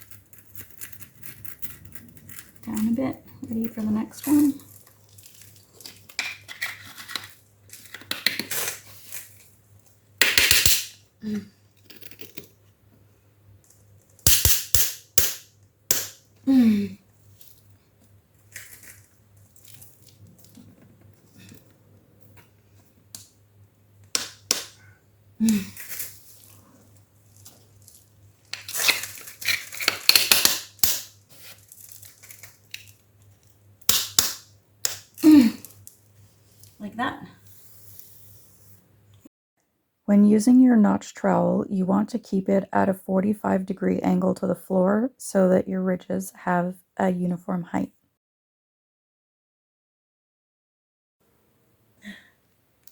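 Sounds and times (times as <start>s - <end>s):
tile scraping clatter: 0.0s - 9.4s
tiles knocking and clicking: 7.9s - 8.5s.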